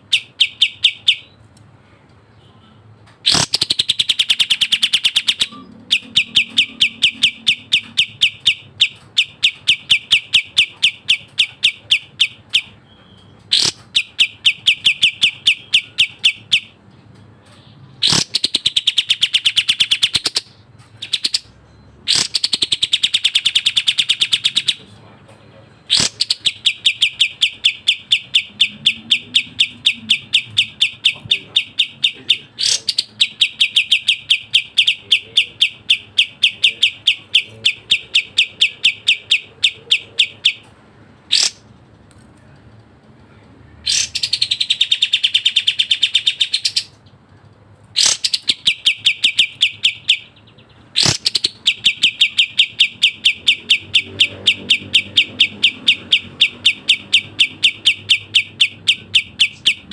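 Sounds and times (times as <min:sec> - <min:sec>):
songbird sharp chirps: 0:00.0 - 0:01.4, 0:02.3 - 0:40.7, 0:43.9 - 0:47.2, 0:48.0 - 0:59.9
bird calls rising and falling: 0:03.2 - 0:16.8, 0:25.9 - 0:40.7, 0:48.0 - 0:59.9.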